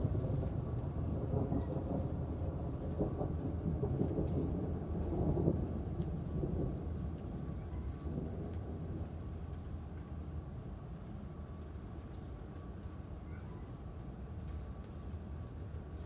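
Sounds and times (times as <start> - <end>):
rolling thunder: 0.0 - 9.4
rain falling: 0.0 - 16.0.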